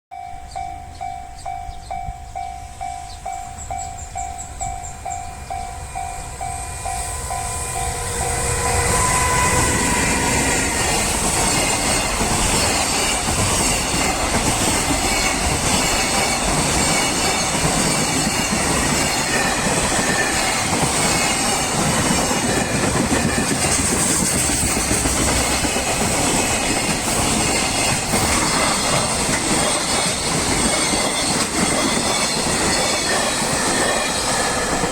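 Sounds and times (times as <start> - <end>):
level crossing warning bell: 0.1 - 23.7
freight train passing: 0.1 - 34.9.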